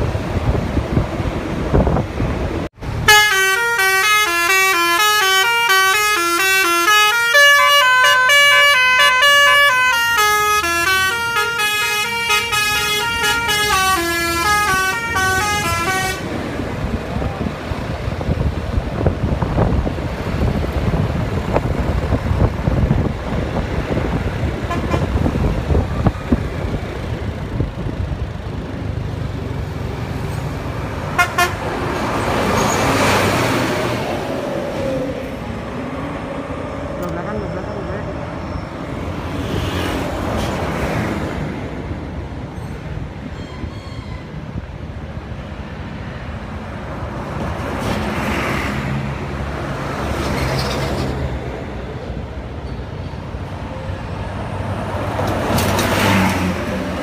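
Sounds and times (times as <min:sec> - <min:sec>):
bus engine rumble: 0:00.0 - 0:57.0
bus multi-tone horn melody: 0:02.9 - 0:16.5, 0:24.6 - 0:25.4, 0:31.0 - 0:33.4.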